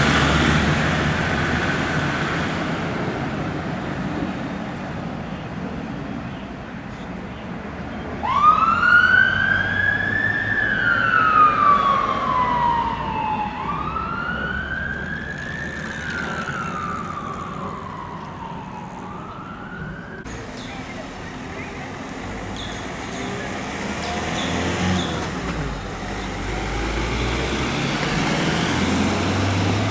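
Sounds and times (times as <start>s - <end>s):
road noise: 0.0s - 29.9s
fire engine siren wailing: 8.2s - 20.4s.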